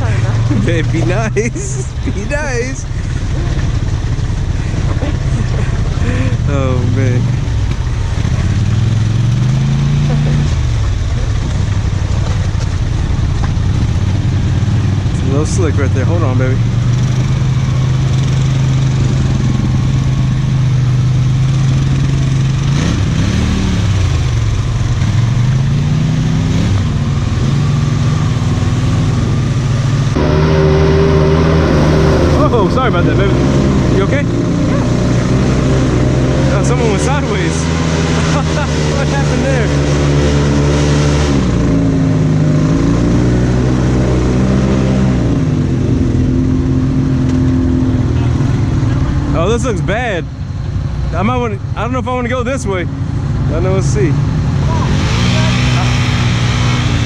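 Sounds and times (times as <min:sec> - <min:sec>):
atv engine revving: 0:00.0 - 0:57.0.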